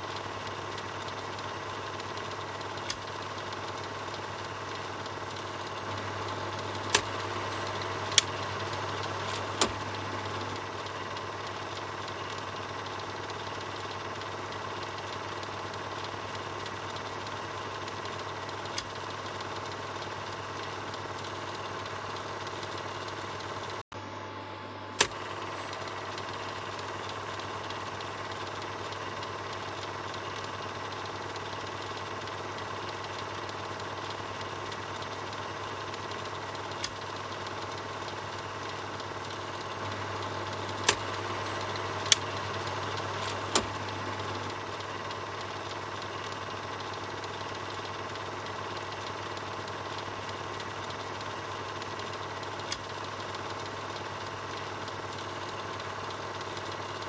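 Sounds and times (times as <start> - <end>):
film projector whirring: 0.0 - 57.0
projector sharp clicks: 0.4 - 13.7, 25.0 - 30.6, 34.9 - 47.9.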